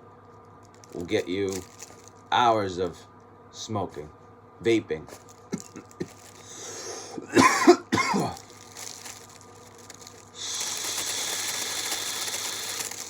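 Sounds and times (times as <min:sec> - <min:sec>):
steady hiss: 0:04.9 - 0:13.0
man coughing hard: 0:05.5 - 0:06.2, 0:07.1 - 0:08.5.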